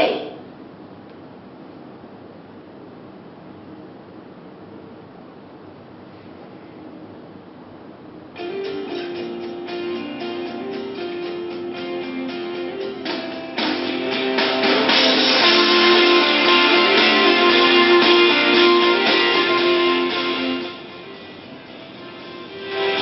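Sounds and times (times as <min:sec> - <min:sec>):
plucked guitar melody: 0:08.4 - 0:20.8.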